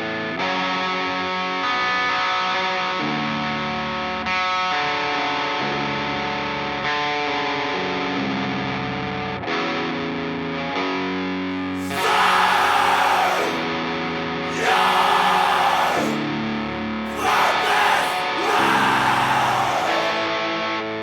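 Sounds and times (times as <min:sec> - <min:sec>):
full band heavy metal: 0:11.8 - 0:13.7, 0:14.5 - 0:16.2, 0:17.1 - 0:20.4.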